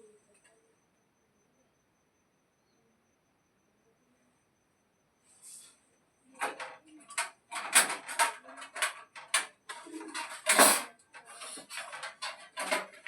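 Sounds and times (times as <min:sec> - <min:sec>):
hard objects clicking and clinking: 0:06.4 - 0:13.0.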